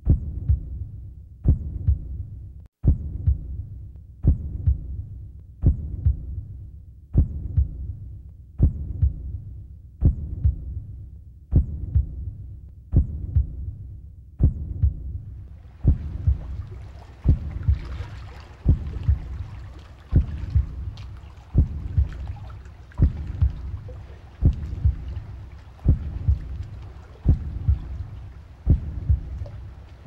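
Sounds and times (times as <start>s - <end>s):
heartbeat double thump: 0.0s - 6.5s, 7.1s - 13.8s, 14.4s - 16.6s, 17.2s - 18.0s, 18.6s - 22.4s, 23.0s - 29.6s
low hum: 14.4s - 30.0s
rushing water: 15.5s - 30.0s.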